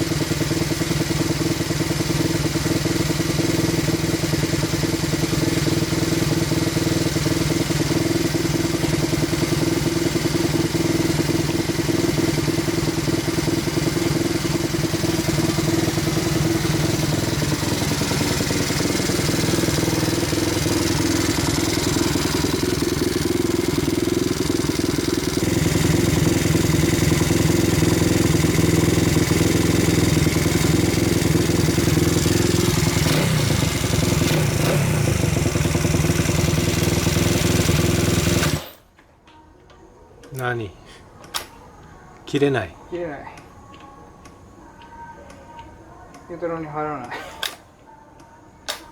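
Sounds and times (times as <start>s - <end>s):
small engine idling: 0.0s - 38.9s.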